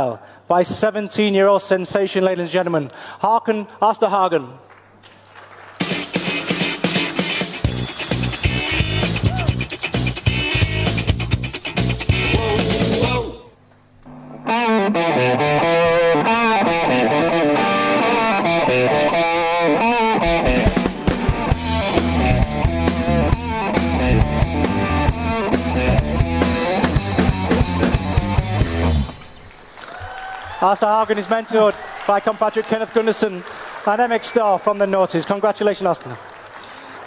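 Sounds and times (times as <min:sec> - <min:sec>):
drum kit: 0:05.8 - 0:13.4, 0:15.7 - 0:29.4
electric guitar: 0:05.8 - 0:29.6.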